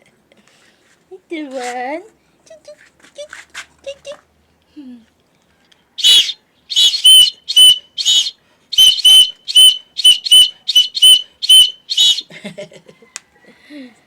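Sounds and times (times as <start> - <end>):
hand whistle short toots: 6.0 - 12.3.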